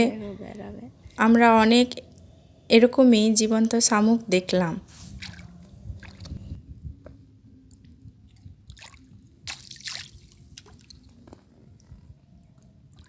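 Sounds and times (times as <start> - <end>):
seawater splashing: 4.8 - 6.4, 8.3 - 11.2.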